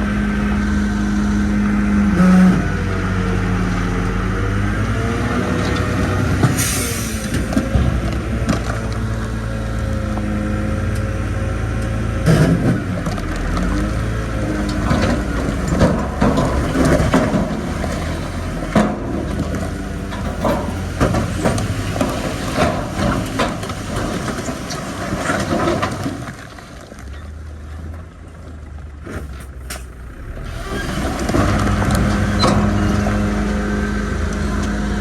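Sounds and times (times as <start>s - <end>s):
bulldozer diesel engine: 0.0s - 35.0s.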